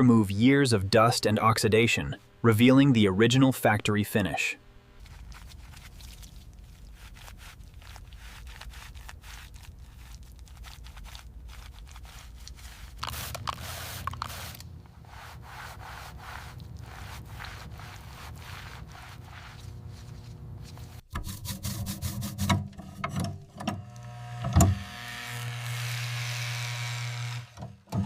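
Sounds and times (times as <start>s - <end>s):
cloth rubbing over surface: 5.0s - 22.0s.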